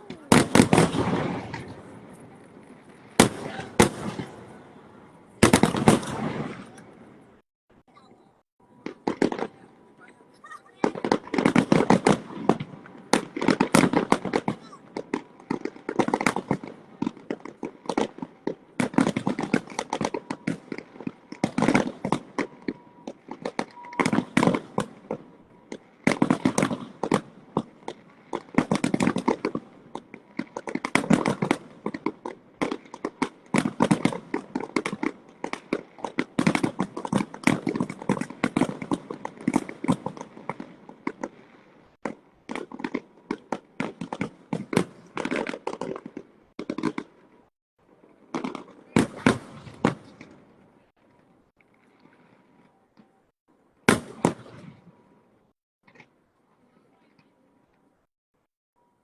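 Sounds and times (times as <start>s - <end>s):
fireworks bangs and crackling: 0.0s - 7.9s, 8.6s - 56.2s.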